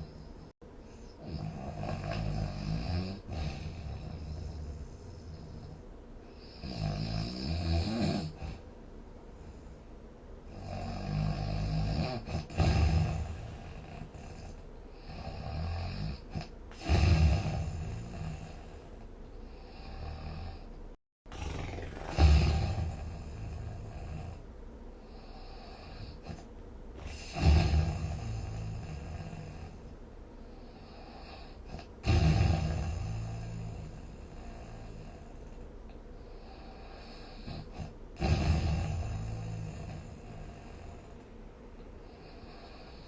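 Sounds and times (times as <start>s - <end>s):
person snoring: 1.1s - 5.8s, 6.4s - 8.6s, 10.5s - 20.7s, 21.3s - 29.9s, 30.5s - 35.6s, 36.2s - 41.2s.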